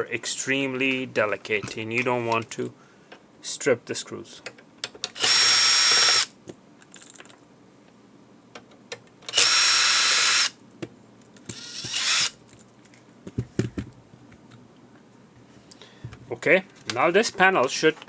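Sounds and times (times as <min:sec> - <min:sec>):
electric screwdriver whirring: 0:05.2 - 0:06.3, 0:09.3 - 0:10.5, 0:11.5 - 0:12.4.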